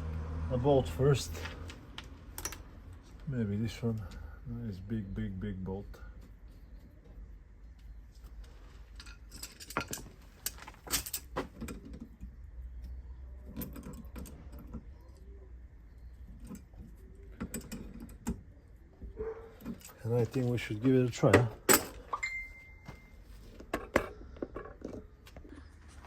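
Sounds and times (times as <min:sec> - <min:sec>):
low steady hum: 0:00.0 - 0:26.0
metal bolts clinking: 0:08.9 - 0:12.4, 0:19.5 - 0:23.0.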